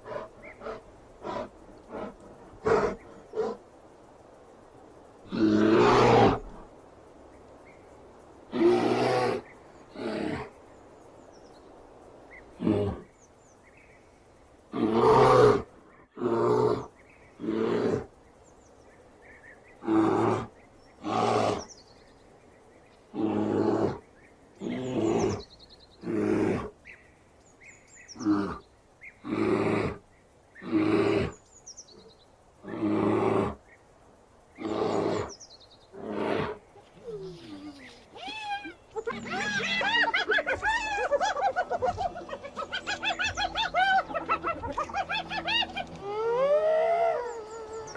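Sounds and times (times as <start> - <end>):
bear growling: 0.0 - 3.6, 38.8 - 46.5
faint bird chirps: 36.7 - 47.9.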